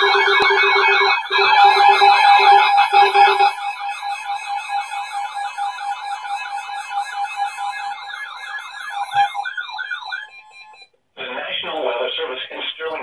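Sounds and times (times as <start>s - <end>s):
steady alert tone: 0.0s - 5.8s
electronic siren warbling: 0.0s - 10.9s.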